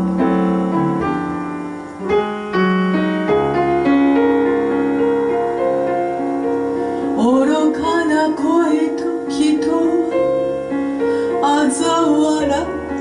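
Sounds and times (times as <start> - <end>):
piano melody: 0.0 - 13.0
person singing: 7.2 - 10.6, 11.2 - 13.0.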